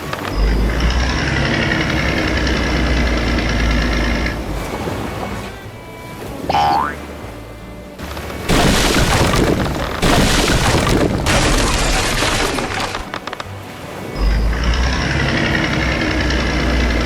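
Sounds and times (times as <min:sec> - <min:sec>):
heavy engine humming: 0:00.0 - 0:17.0
cartoon crashing and rumbling: 0:08.5 - 0:13.2.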